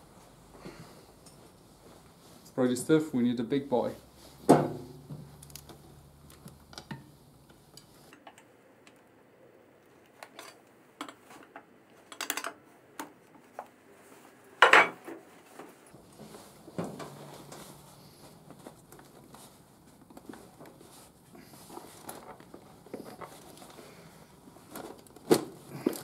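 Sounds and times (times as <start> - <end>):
hand tools and metal parts clinking: 10.2 - 12.6.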